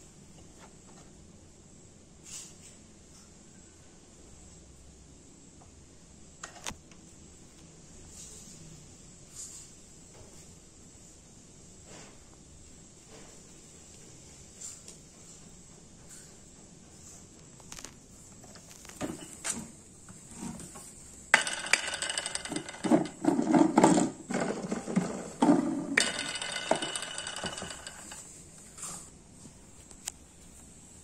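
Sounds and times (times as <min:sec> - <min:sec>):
handling clicks and knocks: 0:18.5 - 0:28.3
vacuum cleaner whining and rattling: 0:18.5 - 0:28.3.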